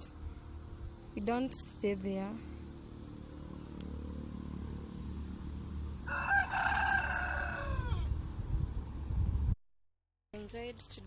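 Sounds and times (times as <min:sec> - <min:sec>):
low steady rumble: 0:00.0 - 0:09.6
rooster crowing: 0:06.0 - 0:08.2.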